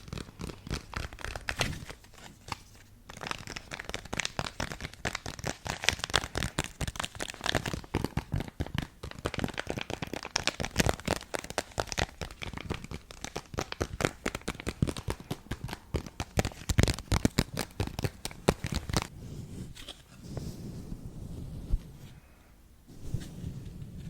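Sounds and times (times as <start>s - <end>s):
soft handling noise: 18.5s - 24.0s.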